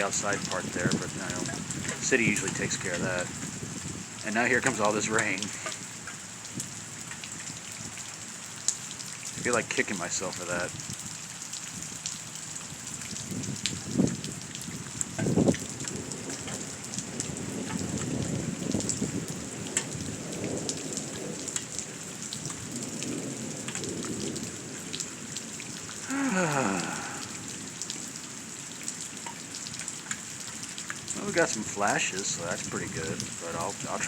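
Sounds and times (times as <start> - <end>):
thunder rumbling: 0.0 - 5.6, 15.2 - 27.8
steady rain pattering: 0.0 - 34.0.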